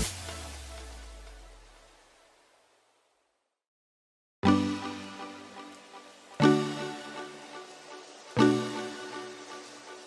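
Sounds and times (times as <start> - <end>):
electronic dance music: 0.0 - 1.6.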